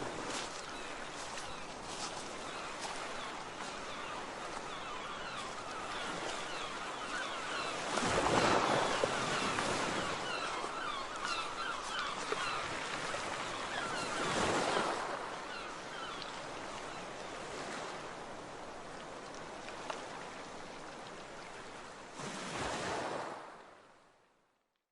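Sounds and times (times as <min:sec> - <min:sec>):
ocean waves washing on shore: 0:00.0 - 0:23.7
faint seagull calls: 0:00.3 - 0:17.0.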